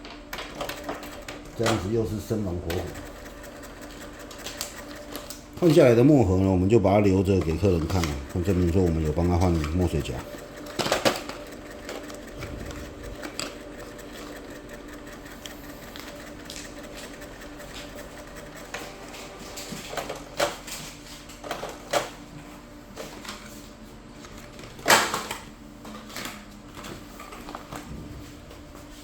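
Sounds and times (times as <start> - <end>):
inkjet printer humming: 0.0 - 23.2.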